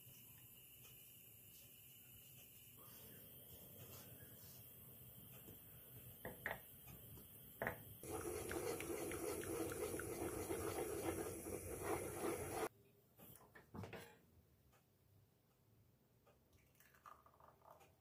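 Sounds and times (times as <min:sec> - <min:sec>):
water running from tap: 0:08.0 - 0:12.7.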